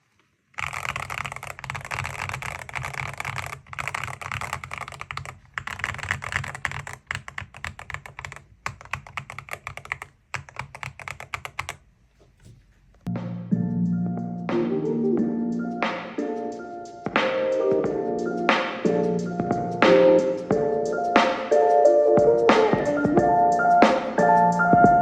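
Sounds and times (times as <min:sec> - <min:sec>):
typing on mechanical keyboard: 0:00.6 - 0:11.8.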